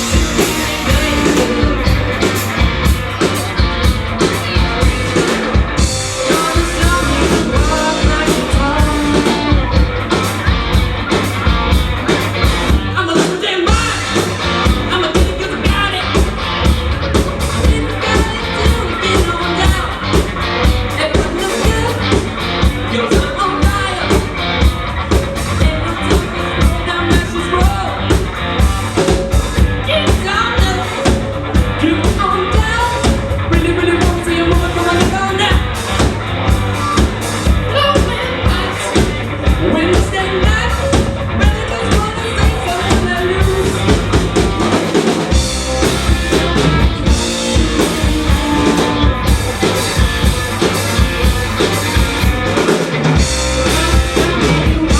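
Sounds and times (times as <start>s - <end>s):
person singing: 0.0s - 2.7s, 4.4s - 10.4s, 12.7s - 16.5s, 17.4s - 20.2s, 20.8s - 24.5s, 25.4s - 28.2s, 37.6s - 44.9s, 45.6s - 50.3s, 53.2s - 54.9s
drum kit beat: 0.0s - 54.9s
rock band playing live: 0.0s - 54.9s.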